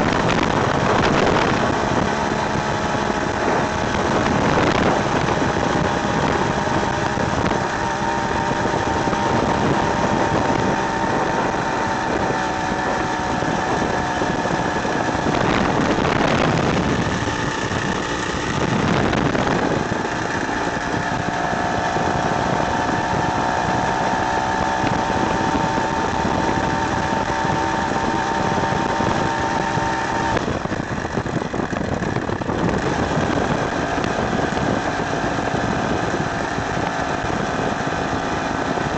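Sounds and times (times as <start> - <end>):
two-stroke engine buzzing: 0.0 - 38.9.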